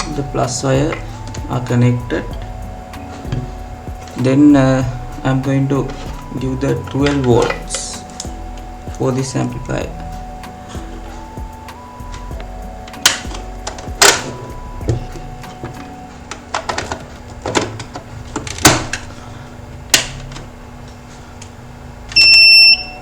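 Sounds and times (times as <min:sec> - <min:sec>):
loud electronic beep: 0:00.0 - 0:16.2, 0:22.2 - 0:23.0
clicks and knocks of parts handled: 0:12.8 - 0:19.1.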